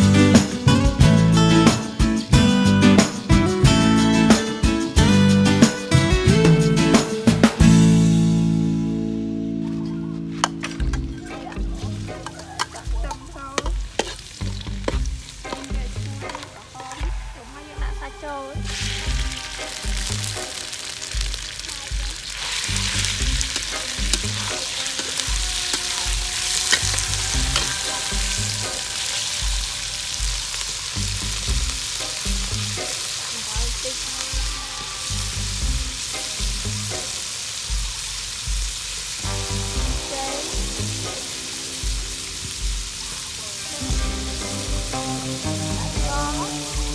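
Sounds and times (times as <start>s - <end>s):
background music: 0.0s - 46.9s
corn sizzling in a pan: 0.0s - 46.9s.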